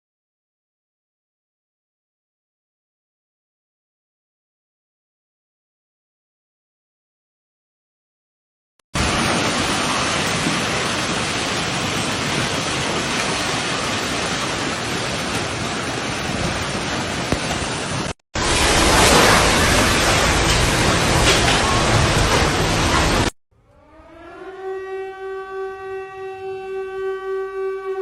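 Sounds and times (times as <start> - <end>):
heavy rain: 9.0 - 23.4.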